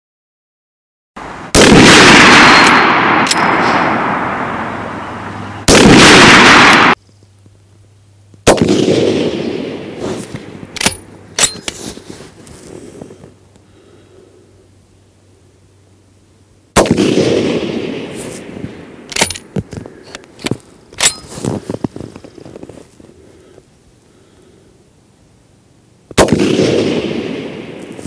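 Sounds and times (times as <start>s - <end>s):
short loud blast: 1.5s - 4.6s
rifle shots with echo: 1.5s - 4.7s, 5.6s - 7.0s, 8.4s - 11.7s, 16.8s - 19.5s, 26.2s - 28.0s
metallic clanks: 10.8s - 11.8s, 20.4s - 21.4s.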